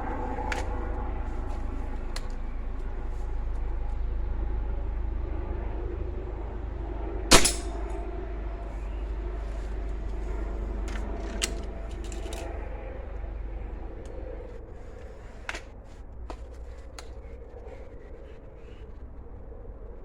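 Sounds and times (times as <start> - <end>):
low rumble: 0.0 - 20.0
air rifle shot: 7.3 - 8.0.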